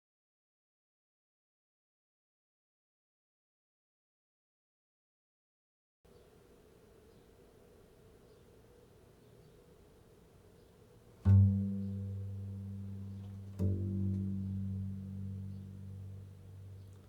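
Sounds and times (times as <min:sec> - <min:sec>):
low plucked string notes: 0:11.2 - 0:17.0.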